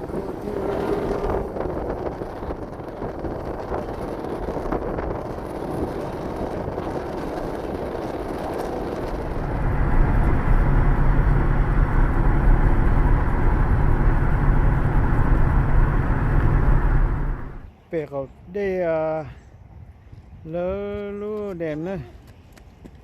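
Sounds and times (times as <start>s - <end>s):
engine running: 0.0s - 17.7s
steady low hum: 0.0s - 17.8s
rushing wind-like noise: 0.0s - 17.9s, 19.0s - 21.2s.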